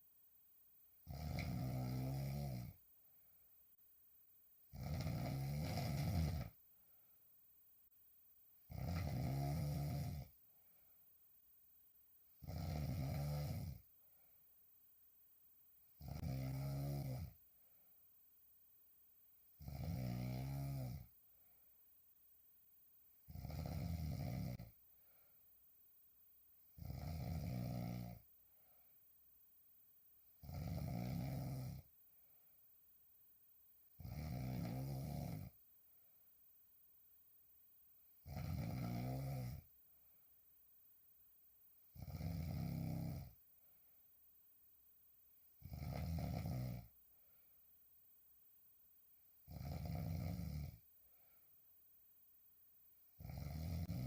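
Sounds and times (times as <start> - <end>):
woman snoring: 1.0 - 2.8, 4.7 - 6.6, 8.7 - 10.4, 12.4 - 13.8, 16.0 - 17.4, 19.6 - 21.1, 23.3 - 24.8, 26.8 - 28.3, 30.4 - 31.9, 34.0 - 35.6, 38.2 - 39.7, 41.9 - 43.4, 45.6 - 47.0, 49.4 - 50.9, 53.2 - 54.0
quiet breathing: 23.2 - 26.0, 26.8 - 29.4, 38.3 - 54.0.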